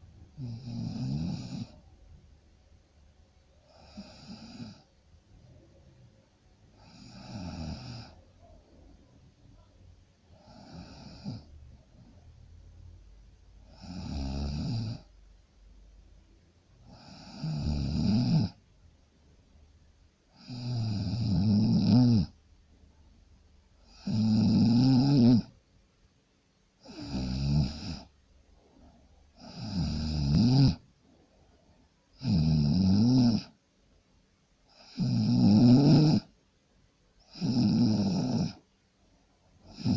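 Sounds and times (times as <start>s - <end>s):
quiet breaths: 0.0s - 39.9s
rattling snores: 0.4s - 1.8s, 3.7s - 4.9s, 6.8s - 8.2s, 10.3s - 11.5s, 13.7s - 15.1s, 16.8s - 18.6s, 20.3s - 22.4s, 23.8s - 25.5s, 26.8s - 28.1s, 29.4s - 30.8s, 32.1s - 33.6s, 34.7s - 36.3s, 37.2s - 38.6s, 39.6s - 39.9s.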